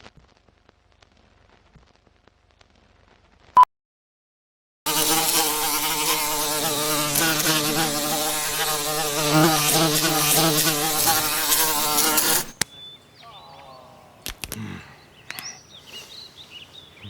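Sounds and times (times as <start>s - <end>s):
insect buzzing: 4.9s - 12.6s.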